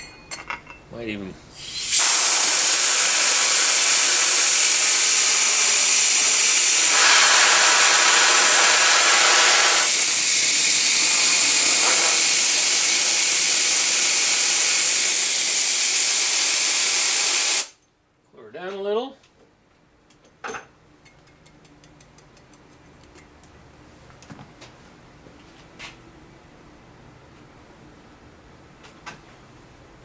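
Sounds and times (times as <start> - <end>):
gas torch hissing: 1.5 - 17.8.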